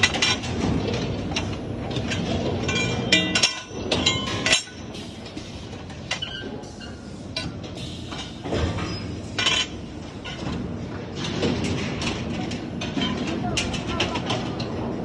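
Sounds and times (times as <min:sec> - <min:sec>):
metal clinking and knocking: 0:00.0 - 0:04.8.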